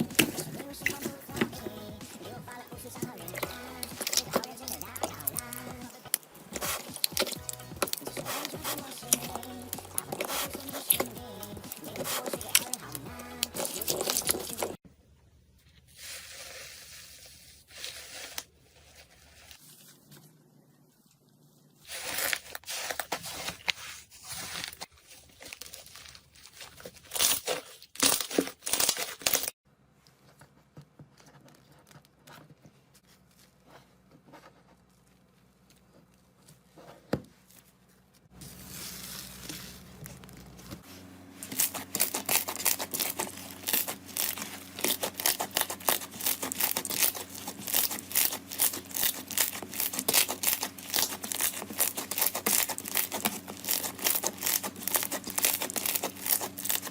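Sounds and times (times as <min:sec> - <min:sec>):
slime squeezed crackling: 0:41.5 - 0:56.9.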